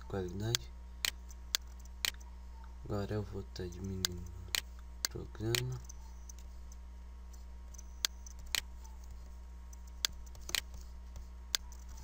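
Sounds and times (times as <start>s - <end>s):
low electrical hum: 0.0s - 12.0s
computer mouse clicking: 7.7s - 12.0s.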